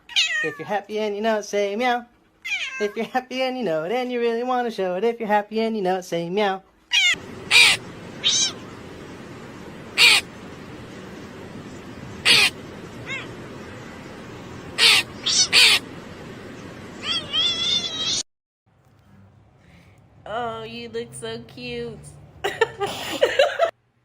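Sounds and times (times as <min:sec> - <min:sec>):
cat meowing: 0:00.0 - 0:00.6, 0:02.4 - 0:03.0, 0:06.9 - 0:08.6, 0:12.2 - 0:13.4, 0:14.8 - 0:15.8, 0:17.0 - 0:18.2
background hiss: 0:07.2 - 0:18.2, 0:19.6 - 0:23.7.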